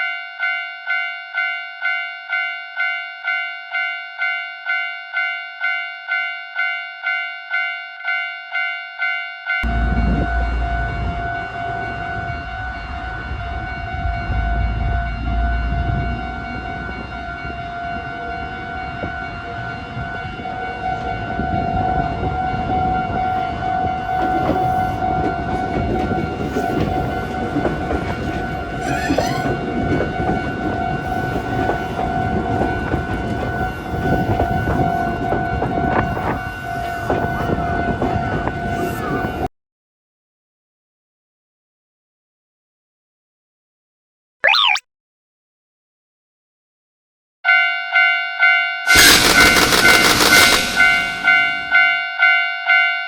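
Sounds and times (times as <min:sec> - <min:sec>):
train rumbling and clattering: 0:09.6 - 0:39.4
steady high tone: 0:44.4 - 0:44.8.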